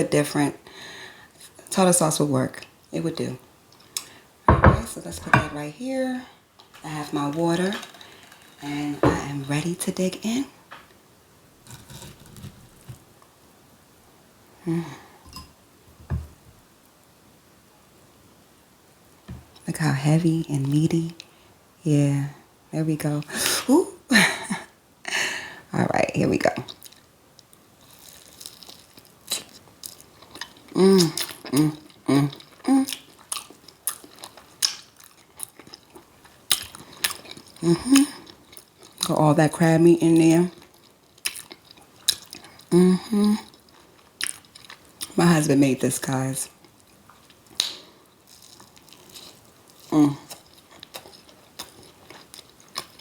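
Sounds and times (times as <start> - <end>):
tableware soft knocks: 4.5 - 5.6
person chewing: 7.8 - 8.8, 27.8 - 39.1, 40.5 - 45.2, 46.6 - 53.0
person humming mm: 14.6 - 15.1, 30.8 - 33.0, 37.6 - 38.2, 42.7 - 43.5, 49.9 - 50.3
person murmuring: 14.7 - 15.0, 37.6 - 38.2, 42.7 - 43.5, 49.9 - 50.3.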